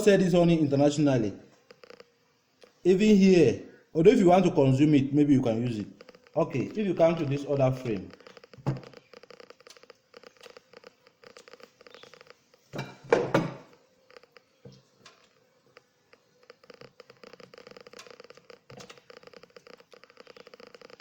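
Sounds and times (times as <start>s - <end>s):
honeybees buzzing: 0.0s - 21.0s
rubbing and handling noise: 5.2s - 21.0s.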